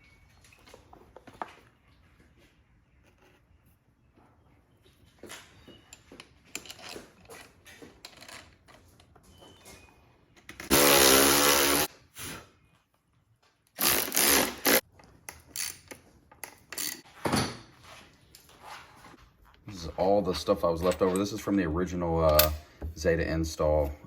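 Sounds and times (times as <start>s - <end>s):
tools clicking and rattling: 5.9s - 9.3s, 14.8s - 17.0s, 20.6s - 21.5s, 22.2s - 22.8s
loud mechanical buzz: 10.7s - 11.9s.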